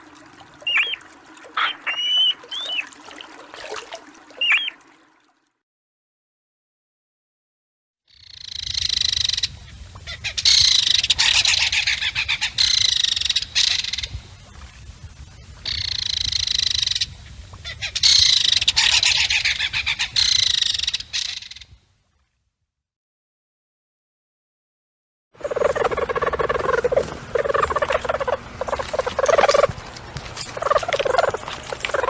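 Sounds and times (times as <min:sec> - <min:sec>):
kingfisher rattle call: 0:00.6 - 0:02.9, 0:04.4 - 0:04.8, 0:08.1 - 0:14.2, 0:15.7 - 0:21.7, 0:25.4 - 0:29.8, 0:30.5 - 0:32.0.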